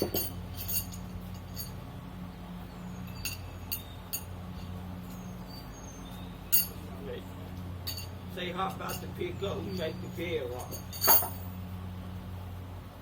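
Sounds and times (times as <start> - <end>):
light metallic clinks: 0.0 - 1.8, 3.0 - 6.9, 7.6 - 11.6
steady low hum: 0.0 - 13.0.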